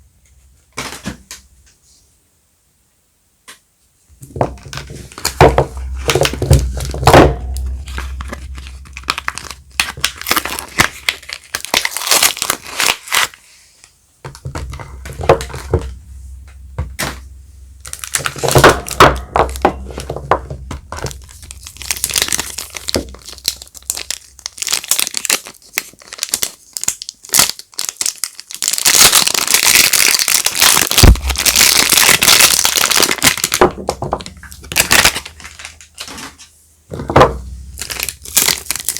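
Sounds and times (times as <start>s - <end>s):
wrapping crinkling and tearing: 4.6s - 13.9s, 17.8s - 37.1s, 37.7s - 38.9s.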